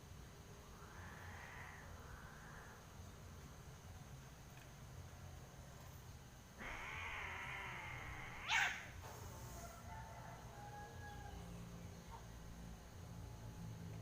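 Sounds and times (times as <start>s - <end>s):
cat screeching: 6.6s - 9.0s
cats yowling: 6.6s - 9.0s.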